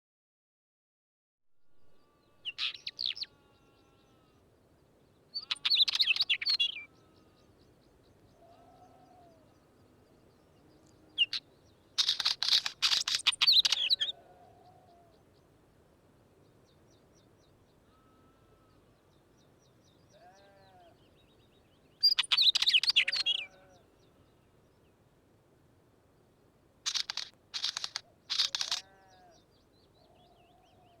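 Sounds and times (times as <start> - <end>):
bird singing scratchy song: 1.8 - 4.3, 5.3 - 14.9, 18.7 - 23.8, 26.8 - 31.0
bird call: 2.4 - 3.4, 5.4 - 7.0, 12.0 - 15.2, 22.0 - 23.7, 26.9 - 29.4
faint low curved bird notes: 16.4 - 24.9.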